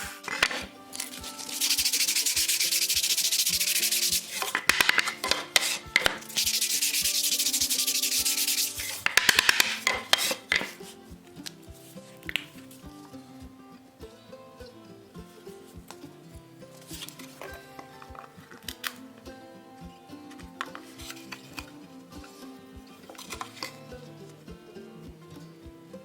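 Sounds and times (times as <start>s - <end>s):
sandpaper rubbing on wood: 0.0s - 11.0s
light background music: 0.0s - 26.0s.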